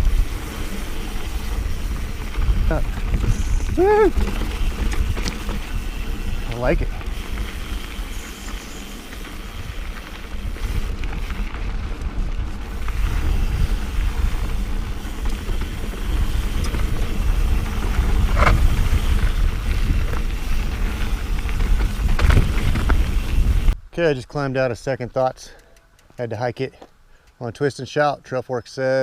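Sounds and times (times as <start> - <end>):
bike rattles and clicks: 0.0 - 23.8, 25.2 - 27.4
tyres rumbling on dirt: 0.0 - 23.8
wind buffeting microphone: 0.0 - 23.8.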